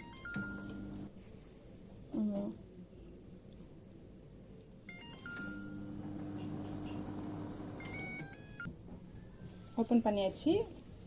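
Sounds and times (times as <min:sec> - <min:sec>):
microwave beep tune: 0:00.0 - 0:01.1, 0:04.9 - 0:08.7
microwave oven humming: 0:00.0 - 0:01.1, 0:04.9 - 0:08.7.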